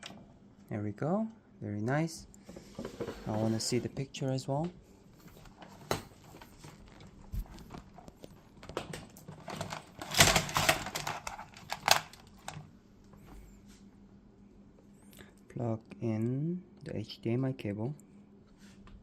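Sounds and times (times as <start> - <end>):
cables and parts clicking: 6.8 - 12.7.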